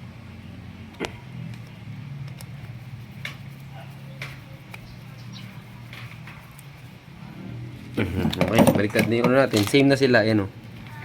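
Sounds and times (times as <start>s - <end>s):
steady low hum: 0.0s - 9.0s
light clicks and taps of parts: 0.9s - 3.5s.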